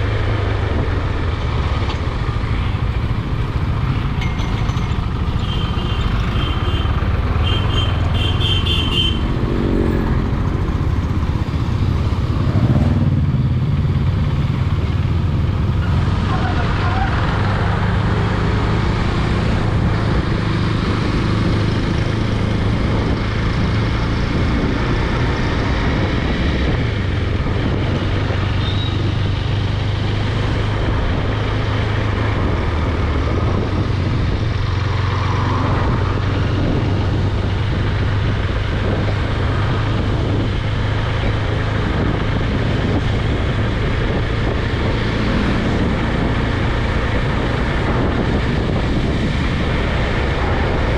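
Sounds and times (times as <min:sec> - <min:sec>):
motorcycle engine running: 0:00.0 - 0:25.4
road noise: 0:00.0 - 0:50.9.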